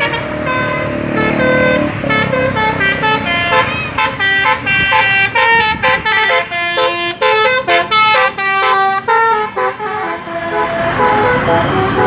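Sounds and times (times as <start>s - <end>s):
multi-tone bus horn tune: 0.0s - 12.0s.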